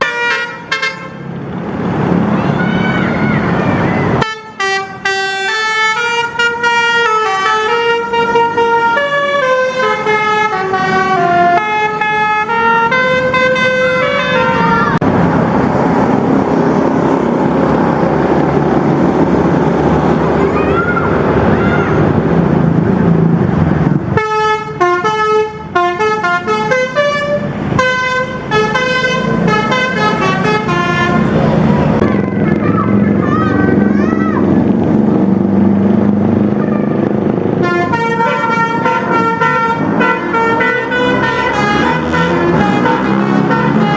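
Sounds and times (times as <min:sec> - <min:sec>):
musical air horn tune: 0:00.0 - 0:01.2, 0:24.2 - 0:31.3, 0:37.6 - 0:43.9
loud steady rushing noise: 0:00.1 - 0:43.9.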